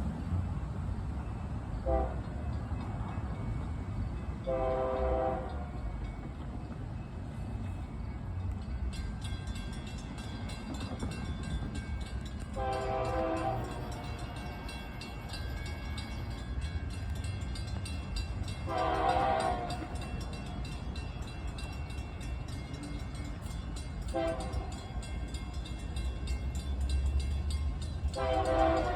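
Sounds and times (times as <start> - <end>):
train rumbling past: 0.0 - 28.9
locomotive air horn blasts: 1.8 - 2.3, 4.4 - 5.7, 12.5 - 14.4, 18.6 - 20.0, 24.1 - 24.8, 28.1 - 28.9.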